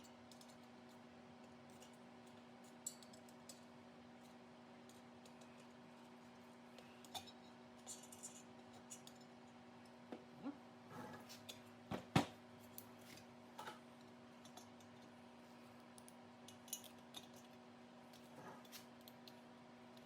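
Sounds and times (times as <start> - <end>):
hand tools and metal parts clicking: 0.0 - 5.8, 6.8 - 9.4, 16.0 - 19.4.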